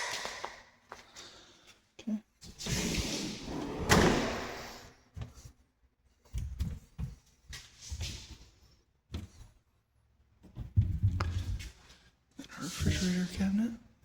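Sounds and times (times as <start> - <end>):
soft knocks and thumps: 10.4 - 11.7.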